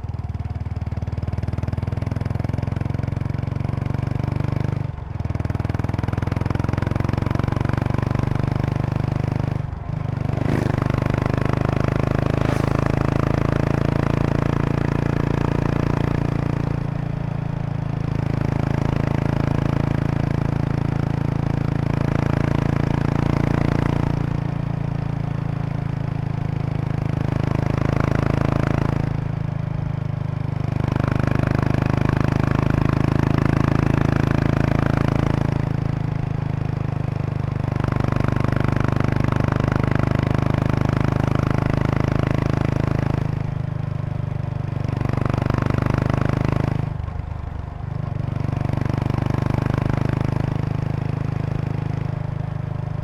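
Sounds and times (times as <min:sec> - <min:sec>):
motorcycle engine running: 0:00.0 - 0:53.0
buzzing rattle of seat bag: 0:10.2 - 0:11.3, 0:12.1 - 0:13.4.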